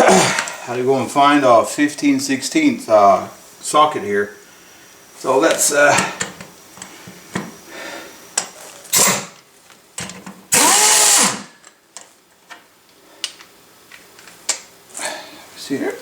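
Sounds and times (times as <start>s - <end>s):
cordless power drill spinning: 10.5s - 11.5s.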